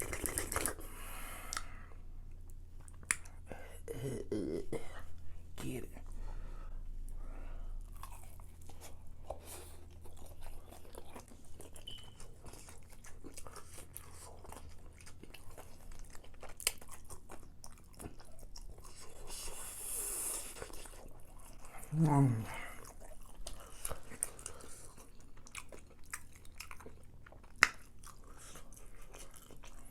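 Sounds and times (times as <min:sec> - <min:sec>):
wet mouth sounds: 0:00.0 - 0:01.8
chewing and crunching food: 0:00.0 - 0:03.5, 0:05.0 - 0:29.9
steady low hum: 0:00.8 - 0:11.8.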